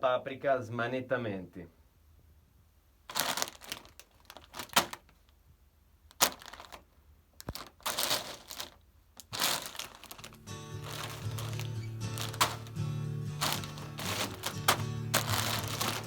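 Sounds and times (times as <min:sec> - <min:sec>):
crisp bag crinkling: 0:03.1 - 0:05.2, 0:06.1 - 0:16.0
music: 0:10.2 - 0:16.0.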